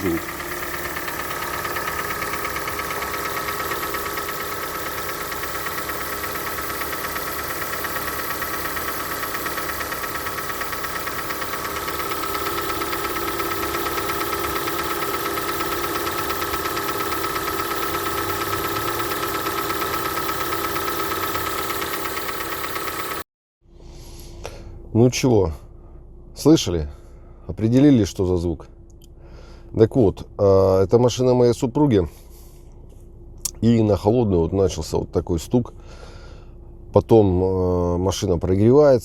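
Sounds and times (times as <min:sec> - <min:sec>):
car engine idling: 0:00.0 - 0:23.2.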